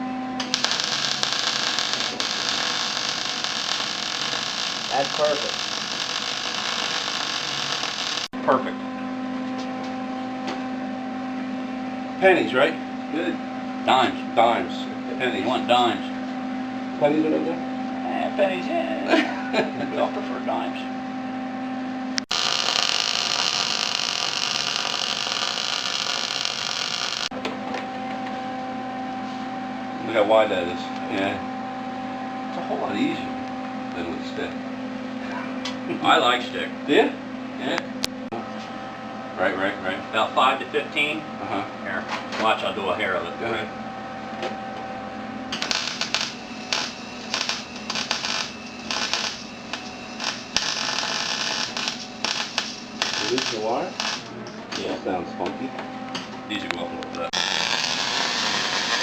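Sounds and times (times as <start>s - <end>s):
welding arc hiss: 0.4s - 8.3s, 22.3s - 27.3s, 45.6s - 54.3s, 57.4s - 59.0s.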